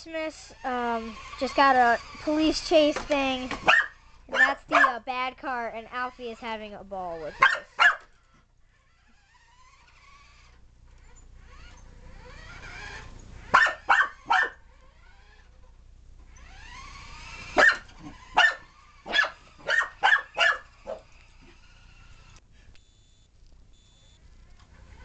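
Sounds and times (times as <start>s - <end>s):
puppy barking sharply: 3.6s - 5.0s, 7.4s - 8.1s, 13.5s - 14.6s, 17.6s - 21.1s.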